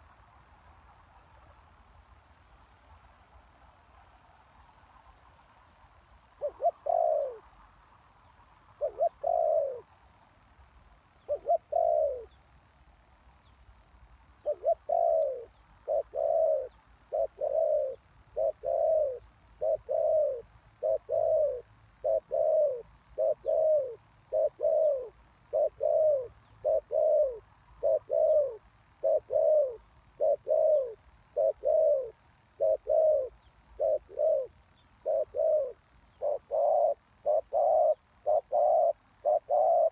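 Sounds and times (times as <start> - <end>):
dove cooing: 6.4 - 7.6, 8.8 - 9.9, 11.2 - 12.4, 14.4 - 39.9.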